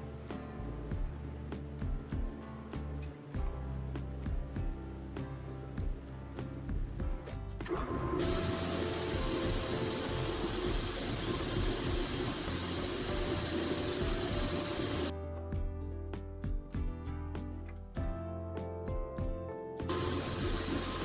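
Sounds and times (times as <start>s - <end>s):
background music: 0.0s - 21.0s
spraying hiss: 8.2s - 15.1s, 19.9s - 21.0s.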